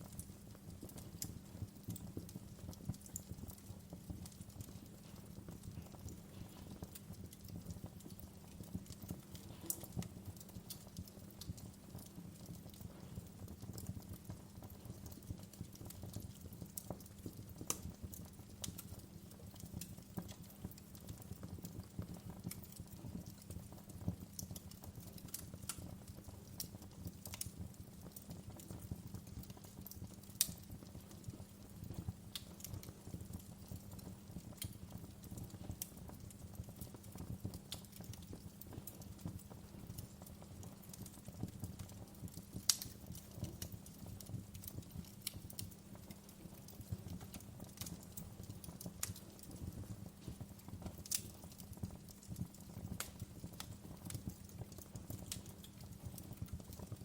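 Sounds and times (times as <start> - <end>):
wood fire crackling: 0.0 - 57.0
loud fire pops: 42.6 - 45.7.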